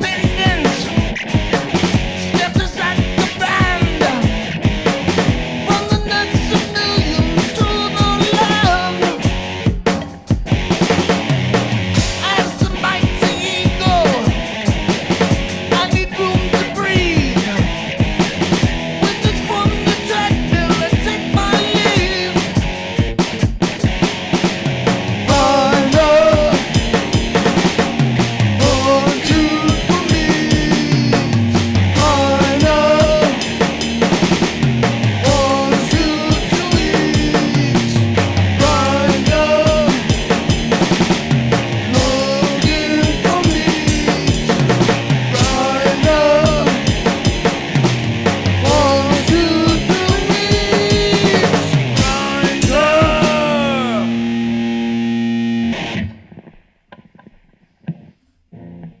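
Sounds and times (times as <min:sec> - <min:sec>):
drum kit beat: 0:00.0 - 0:54.4
heavy metal band playing: 0:00.0 - 0:56.2
distorted guitar and bass riff: 0:00.0 - 0:59.0
bending guitar note: 0:51.8 - 0:57.3.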